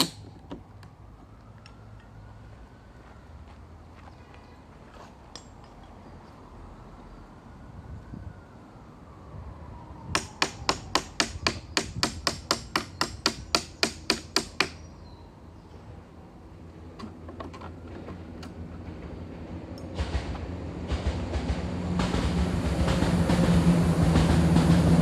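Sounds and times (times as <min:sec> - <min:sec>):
hammer striking: 0:00.0 - 0:00.4, 0:10.2 - 0:14.8.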